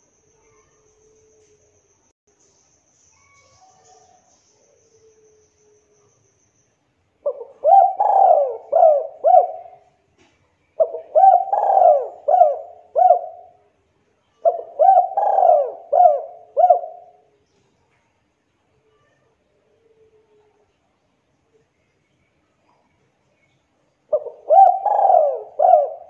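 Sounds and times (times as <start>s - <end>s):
dove cooing: 7.2s - 9.9s, 10.8s - 13.6s, 14.4s - 17.2s, 24.1s - 26.0s.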